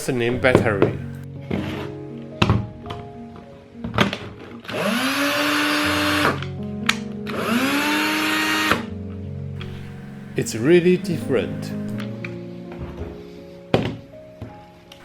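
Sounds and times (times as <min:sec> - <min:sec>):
cordless drill motor whine: 0:04.7 - 0:06.4, 0:07.3 - 0:08.9, 0:09.6 - 0:12.0.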